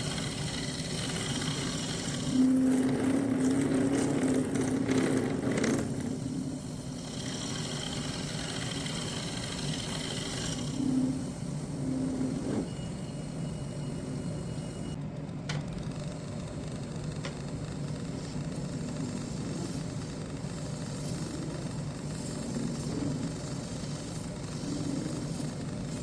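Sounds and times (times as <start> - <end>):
power tool motor humming: 0.0 - 11.0.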